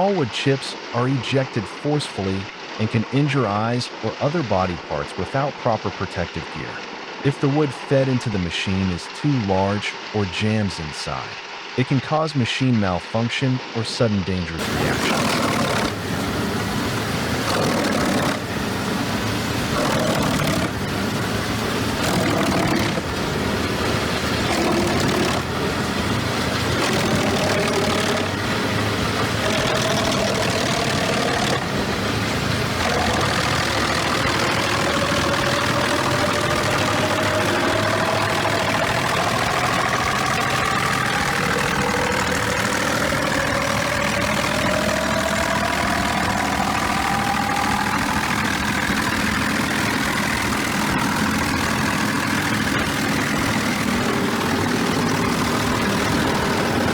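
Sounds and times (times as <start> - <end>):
machine whine rising in pitch: 14.6 - 56.9
wood chipper running: 14.6 - 56.9.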